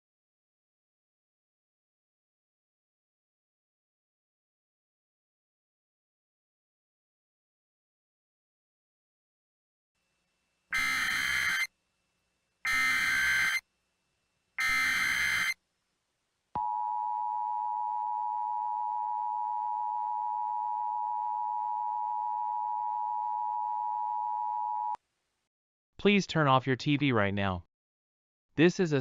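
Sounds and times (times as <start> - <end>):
screeching data bursts: 10.7 - 11.7, 12.7 - 13.6, 14.6 - 15.6
two-tone alert signal: 10.8 - 11.7, 12.7 - 13.6, 14.6 - 15.6.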